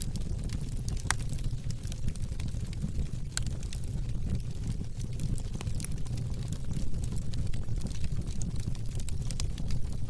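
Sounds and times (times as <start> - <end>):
fire crackling and popping: 0.0 - 10.0
low rumble of flames: 0.0 - 10.0.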